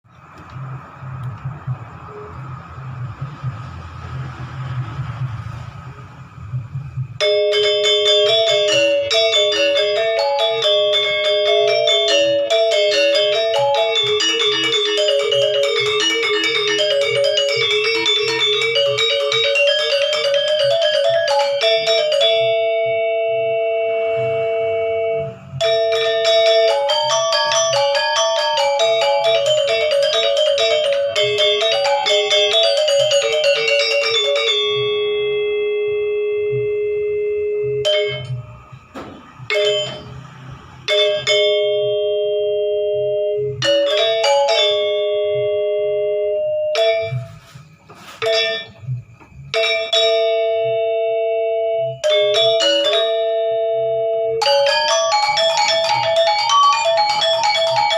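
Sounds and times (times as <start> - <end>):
gamelan music: 0.6 - 36.3, 37.7 - 57.9
struck metal bars music: 46.8 - 50.6.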